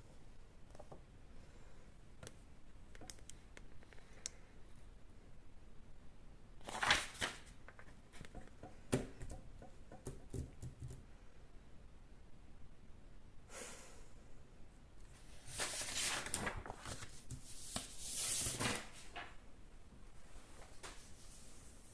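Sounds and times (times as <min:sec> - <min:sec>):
paper rustling and scratching: 0:06.6 - 0:08.3, 0:15.2 - 0:19.3.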